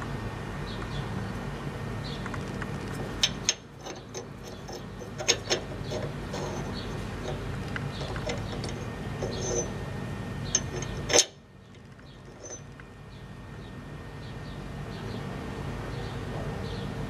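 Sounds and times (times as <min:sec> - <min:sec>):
steady background hum: 0:00.0 - 0:17.0
metal tools clinking: 0:03.2 - 0:07.4, 0:08.0 - 0:09.7, 0:10.5 - 0:11.4, 0:12.2 - 0:12.7.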